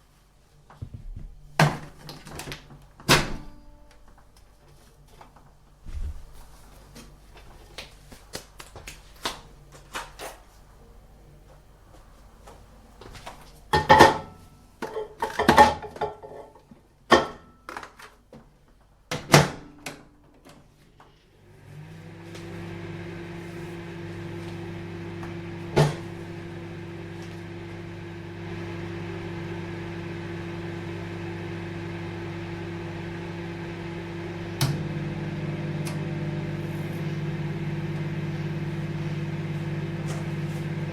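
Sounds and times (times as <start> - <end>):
microwave oven humming: 21.4 - 40.9.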